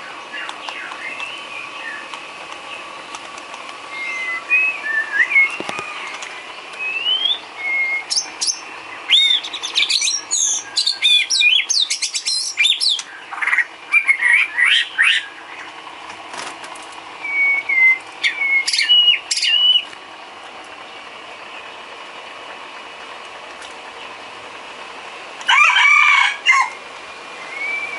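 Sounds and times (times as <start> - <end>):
bird singing whistled song: 0.0 - 2.1, 3.9 - 6.2, 6.8 - 15.7, 17.2 - 19.9, 27.4 - 27.9.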